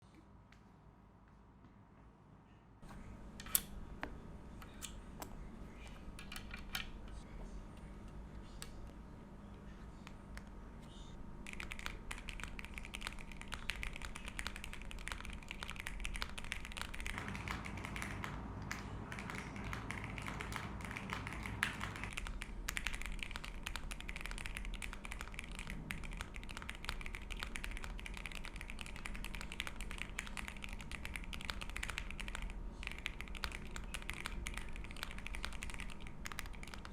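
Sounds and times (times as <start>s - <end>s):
mechanical keyboard typing: 11.4s - 36.9s.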